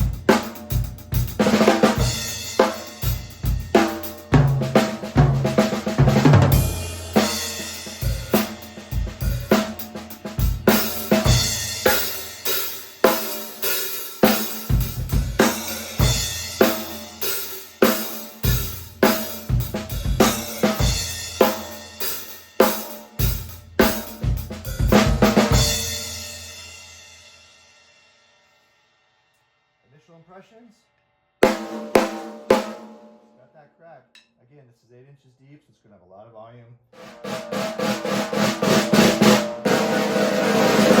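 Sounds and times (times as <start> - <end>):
drum kit groove: 0.0 - 27.9, 31.4 - 33.4, 37.0 - 41.0
snare drum crack: 3.8 - 12.2.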